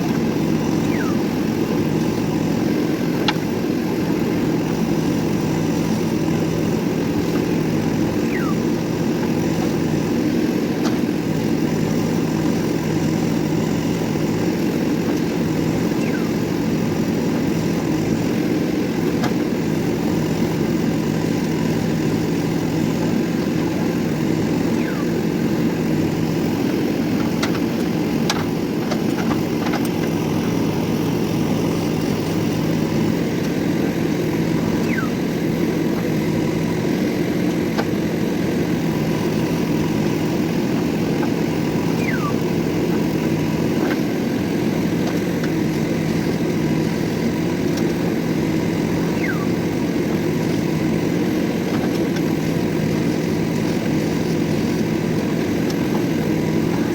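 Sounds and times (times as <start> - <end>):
diesel engine running: 0.0 - 56.9
short falling squeaks: 0.8 - 1.2, 16.0 - 16.4, 34.7 - 35.2, 42.0 - 42.4, 49.1 - 49.6.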